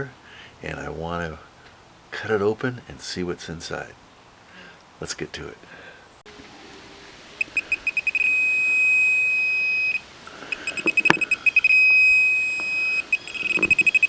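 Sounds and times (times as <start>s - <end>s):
metal detector beeping: 7.4s - 14.0s.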